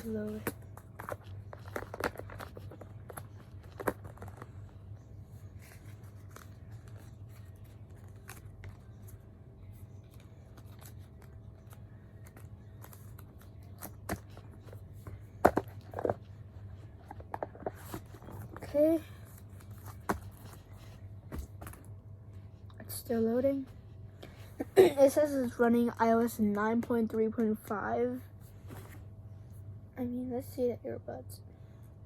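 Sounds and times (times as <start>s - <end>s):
phone and packaging handling: 0.0s - 4.8s
steady low hum: 0.0s - 32.0s.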